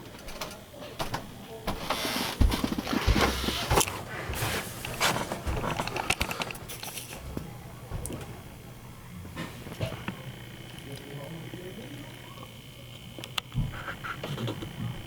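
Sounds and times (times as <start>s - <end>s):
paper rustling and crinkling: 1.7s - 7.2s.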